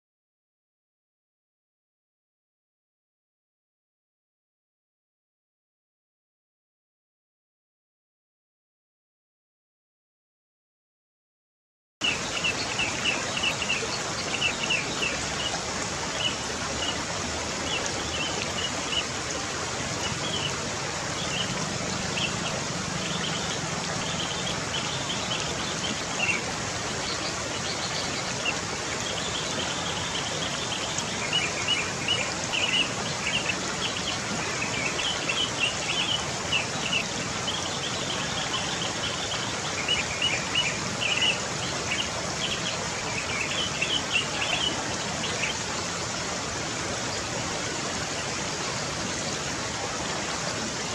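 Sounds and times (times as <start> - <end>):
steady outdoor hiss: 12.0 - 50.9.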